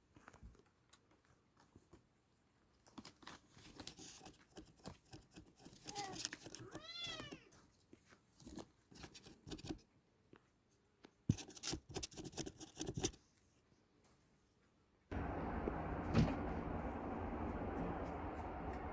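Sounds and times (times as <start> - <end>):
kitten claws scratching hard surface: 3.2 - 7.5, 8.5 - 9.8, 11.3 - 13.2.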